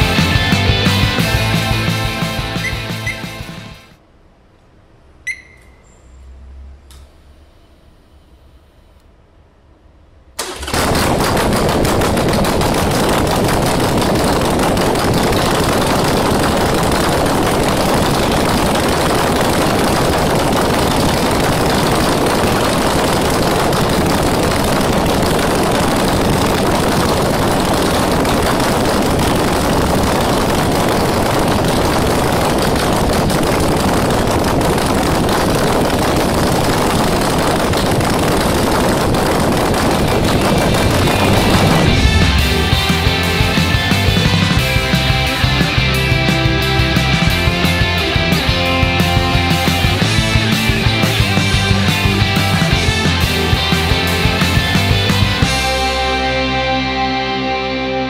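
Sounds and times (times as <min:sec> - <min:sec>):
motorcycle engine exhaust: 0:10.4 - 0:56.6.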